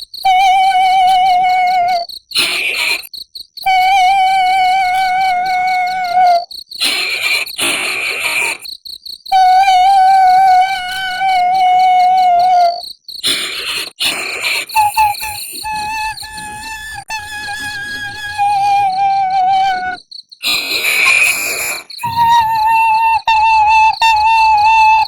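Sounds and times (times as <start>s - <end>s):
high-pitched ghostly wailing: 13.5s - 25.0s
breathy rush: 20.4s - 22.8s.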